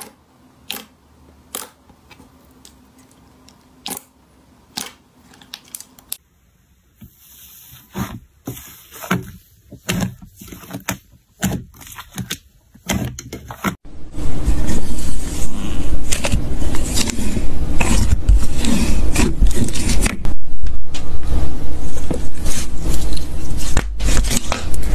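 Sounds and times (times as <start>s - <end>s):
slime squishing and crackling: 8.9s - 13.2s.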